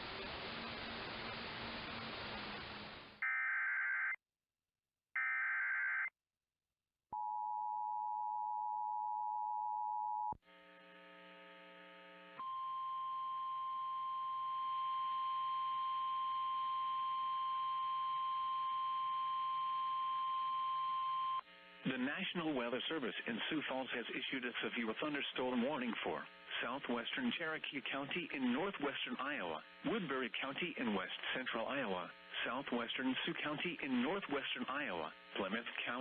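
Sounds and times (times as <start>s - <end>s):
radio hiss: 0.0s - 3.2s, 21.8s - 36.0s.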